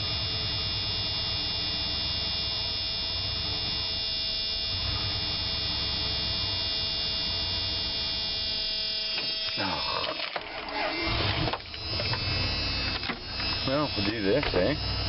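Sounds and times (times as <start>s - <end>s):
truck engine idling roughly: 4.6s - 7.9s, 9.6s - 15.0s.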